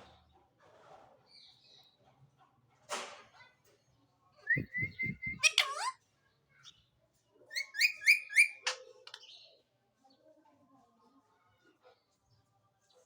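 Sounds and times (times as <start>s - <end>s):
parrot whistling calls: 4.5s - 5.9s, 7.6s - 8.6s.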